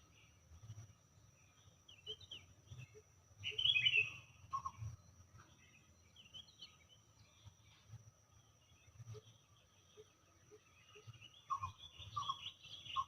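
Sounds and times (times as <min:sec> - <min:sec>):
birds chirping and calling: 0:01.9 - 0:04.8, 0:09.2 - 0:13.0.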